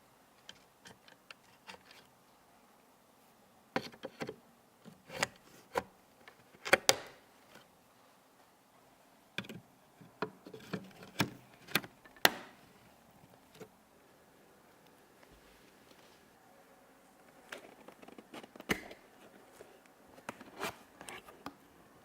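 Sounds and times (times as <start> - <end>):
computer parts clicking and knocking: 10.2 - 12.6.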